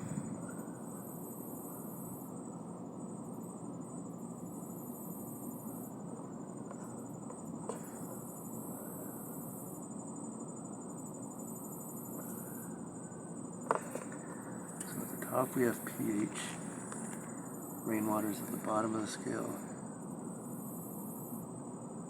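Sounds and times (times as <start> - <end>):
low background rumble: 0.0 - 1.4
insects trilling: 0.0 - 22.0.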